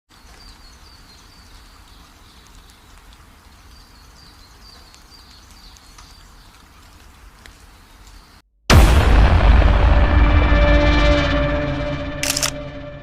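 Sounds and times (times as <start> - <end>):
steady rain: 0.1 - 8.4.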